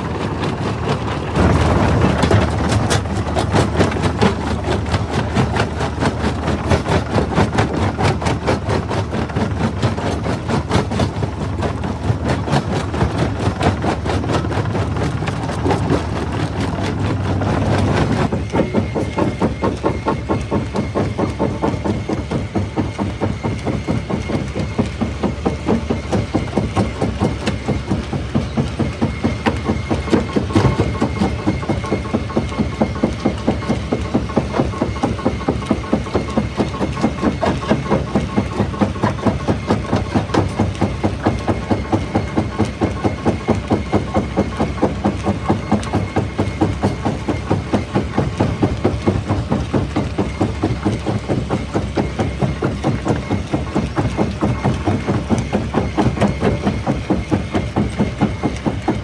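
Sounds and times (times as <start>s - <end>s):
low machine rumble: 0.0s - 59.0s.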